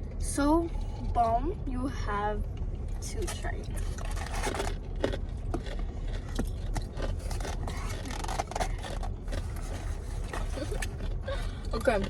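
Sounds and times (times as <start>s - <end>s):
low car rumble: 0.0s - 12.0s
paper packaging crinkling: 3.2s - 5.1s, 6.6s - 11.7s.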